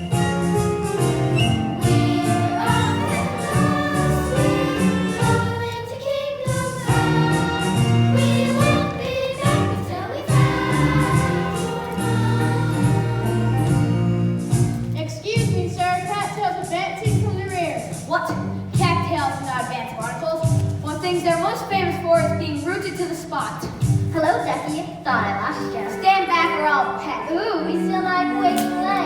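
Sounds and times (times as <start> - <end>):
instrumental accompaniment: 0.0 - 19.6, 23.3 - 29.0
chorus of young performers singing: 1.4 - 14.3.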